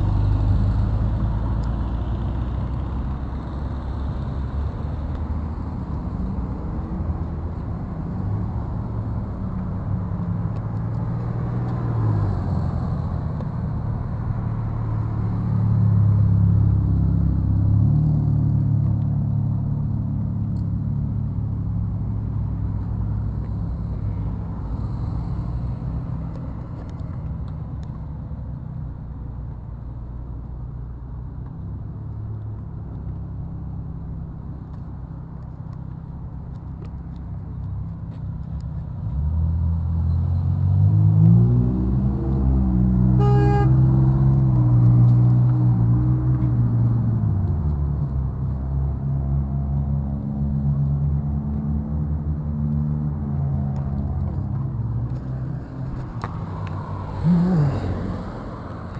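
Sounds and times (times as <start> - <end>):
vehicle engine running: 0.0 - 11.7.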